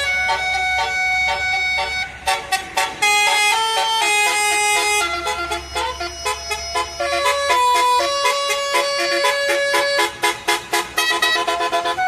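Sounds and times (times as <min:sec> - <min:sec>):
multi-tone musical air horn: 0:00.0 - 0:12.0.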